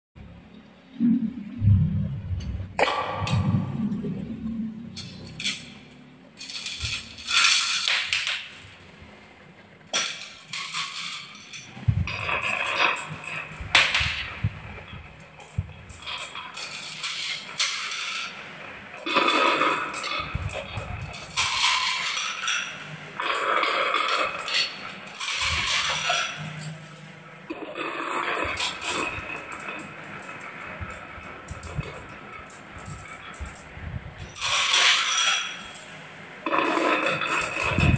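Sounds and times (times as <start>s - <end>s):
marbles rattling down wooden track: 5.4s - 8.8s, 9.9s - 18.4s, 19.0s - 26.8s, 27.6s - 33.7s, 34.3s - 35.9s.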